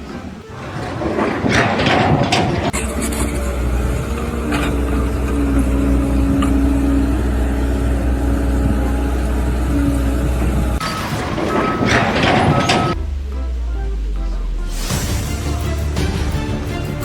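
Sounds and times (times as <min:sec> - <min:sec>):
engine running with low rumble: 0:02.7 - 0:10.8, 0:12.8 - 0:15.6.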